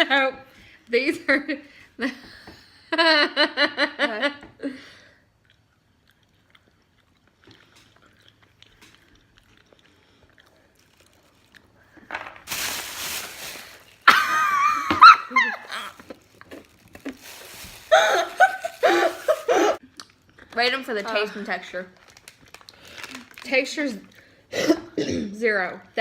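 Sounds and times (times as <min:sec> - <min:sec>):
woman talking: 0:00.0 - 0:02.2, 0:20.6 - 0:22.0, 0:23.4 - 0:24.1, 0:25.2 - 0:26.0.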